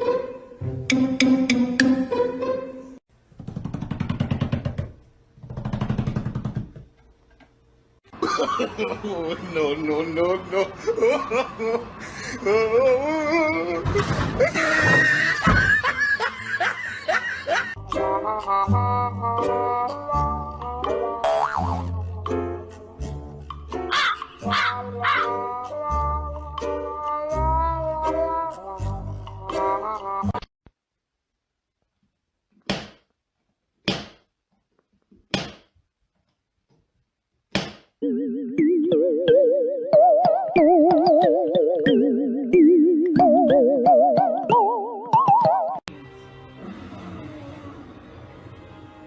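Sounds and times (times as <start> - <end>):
light comic music: 0.0 - 3.0, 14.4 - 30.5, 38.0 - 49.0
person laughing: 8.1 - 9.8, 10.5 - 17.8
music with wobbling tone: 38.0 - 45.9.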